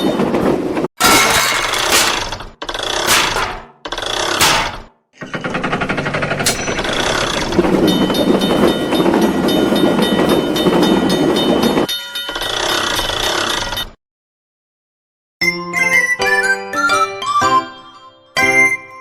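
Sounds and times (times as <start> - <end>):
passing train rumble: 6.5 - 11.9
railroad crossing bell ringing: 6.5 - 13.9.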